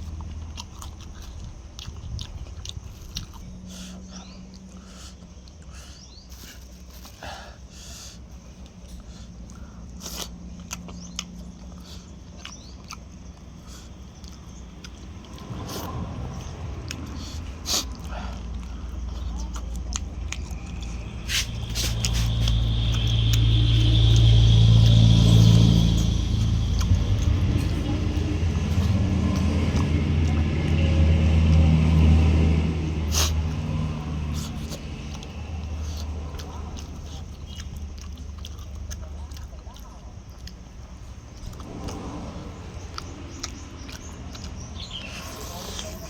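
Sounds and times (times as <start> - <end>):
chewing and biting: 0.0 - 46.0
steady low hum: 0.0 - 46.0
wet mouth clicks and smacks: 9.0 - 25.8.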